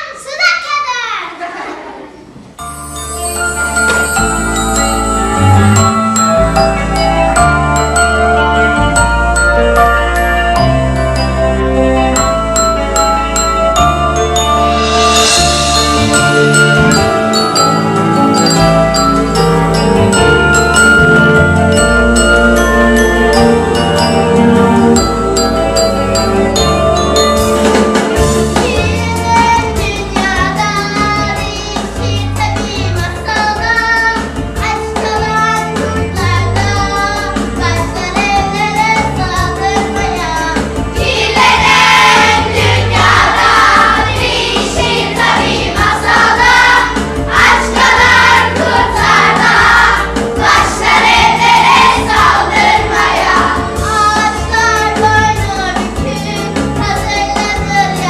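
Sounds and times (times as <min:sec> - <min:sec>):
song with backing accompaniment: 0:02.6 - 0:58.0
group of voices singing: 0:41.0 - 0:55.1.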